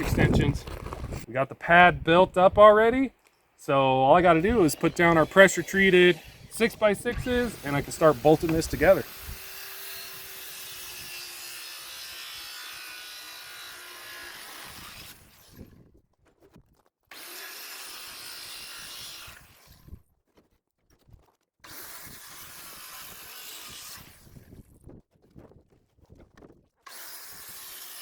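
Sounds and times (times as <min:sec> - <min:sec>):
power tool cutting wood: 0:03.6 - 0:15.6, 0:17.1 - 0:19.8, 0:21.6 - 0:24.4, 0:26.9 - 0:28.0.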